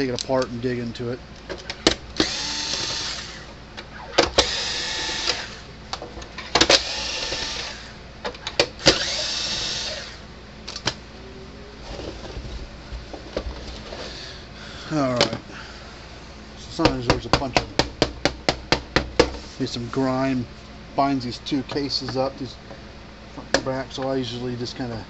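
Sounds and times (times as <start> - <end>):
cordless drill whirring: 2.2 - 3.5, 4.2 - 5.7, 6.7 - 8.0, 8.8 - 10.2.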